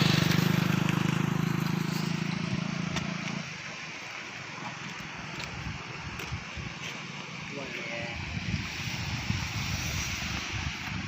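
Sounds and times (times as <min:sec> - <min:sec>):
motor engine humming: 0:00.0 - 0:07.5
steady rushing noise: 0:00.0 - 0:11.0.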